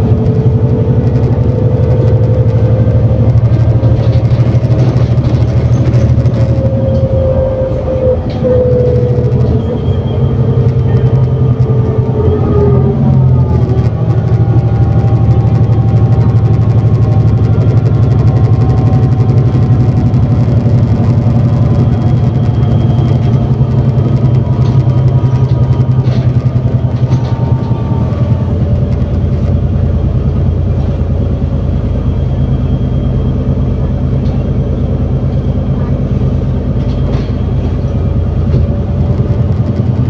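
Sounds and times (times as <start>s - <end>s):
bus engine drone with whine: 0.0s - 40.0s.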